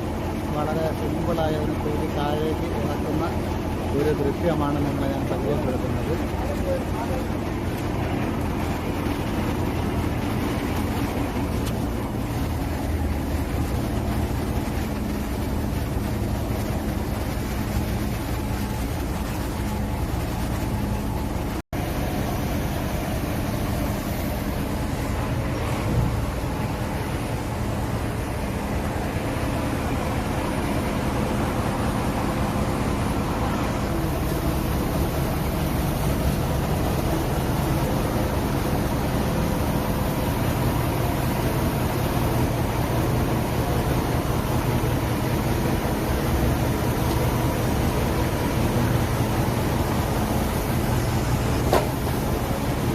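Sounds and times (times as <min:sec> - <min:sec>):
constant hiss: 0:00.0 - 0:52.9
diesel engine rumbling: 0:00.0 - 0:52.9.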